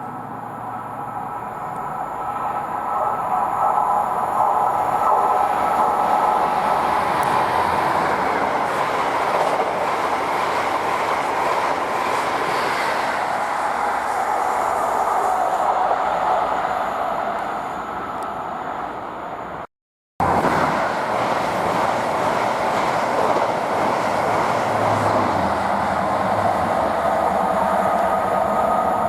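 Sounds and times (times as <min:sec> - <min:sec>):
train wheels rushing on rail: 0:00.0 - 0:18.3, 0:20.2 - 0:29.0.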